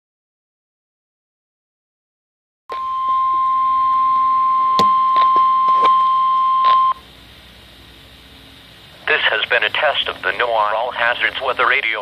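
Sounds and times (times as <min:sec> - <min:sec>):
weather radio alarm tone: 0:02.7 - 0:07.0
radio hiss: 0:08.7 - 0:12.0.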